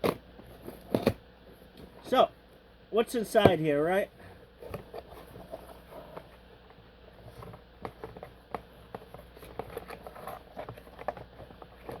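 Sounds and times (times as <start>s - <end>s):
packaging clicks and rustles: 4.6s - 12.0s.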